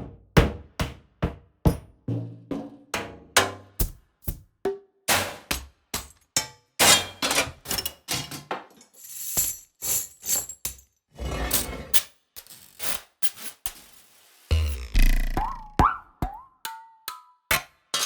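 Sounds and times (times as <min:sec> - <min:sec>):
metal percussion strikes and clangs: 0:05.1 - 0:10.9.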